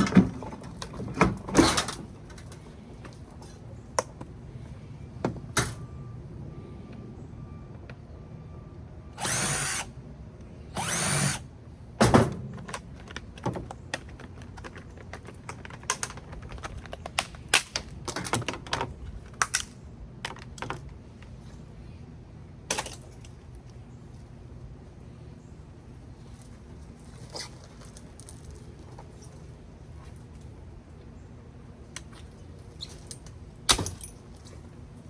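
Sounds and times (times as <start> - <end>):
power drill running: 9.1 - 9.9, 10.7 - 11.5.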